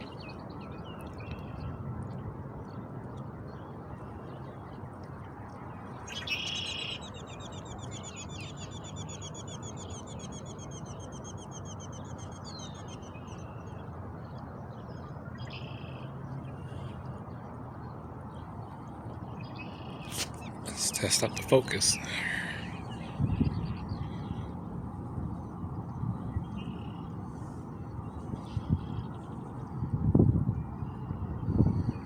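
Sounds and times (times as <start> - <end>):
small bird singing: 6.1 - 11.1.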